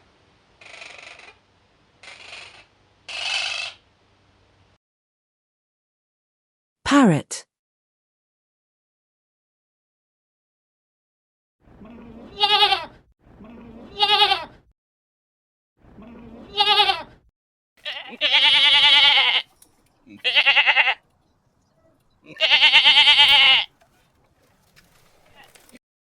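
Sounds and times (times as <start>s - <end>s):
goat bleating: 11.8s - 14.6s, 16.0s - 17.1s, 17.8s - 21.0s, 22.2s - 23.7s.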